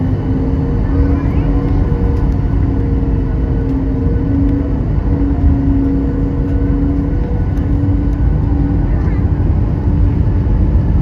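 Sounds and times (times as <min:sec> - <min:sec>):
vehicle engine rumbling: 0:00.0 - 0:11.0.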